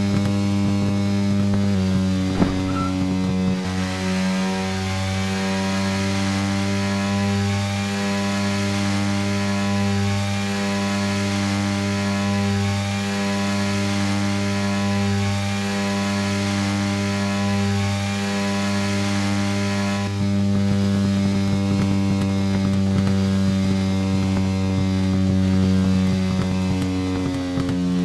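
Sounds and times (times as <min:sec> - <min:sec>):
motorcycle engine droning: 0:00.0 - 0:06.2, 0:22.5 - 0:28.0.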